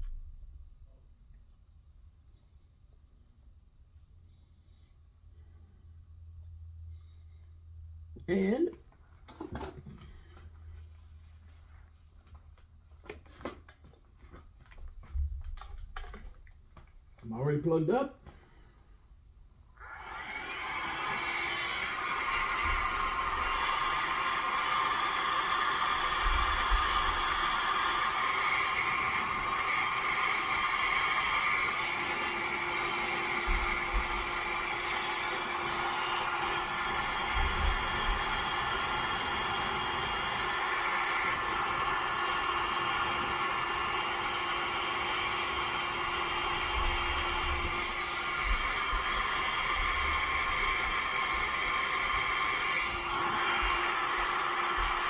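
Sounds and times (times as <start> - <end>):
hair dryer blowing: 19.8 - 55.0.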